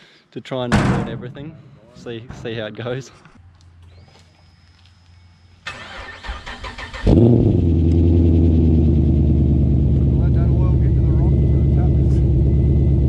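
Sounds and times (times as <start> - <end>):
car engine starting and idling: 5.6 - 13.0.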